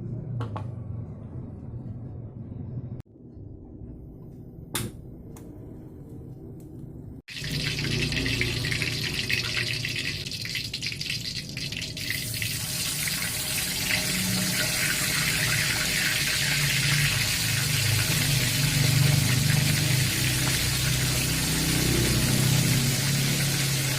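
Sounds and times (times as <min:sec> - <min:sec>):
water running into a sink: 0:07.3 - 0:23.9.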